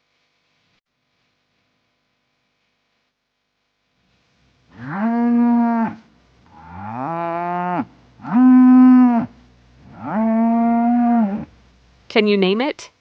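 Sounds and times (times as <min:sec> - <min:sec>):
cow mooing: 0:04.7 - 0:11.5.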